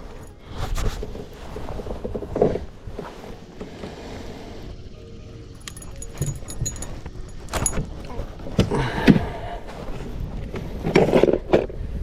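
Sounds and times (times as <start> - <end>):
fishing reel gears clicking: 5.6 - 7.7.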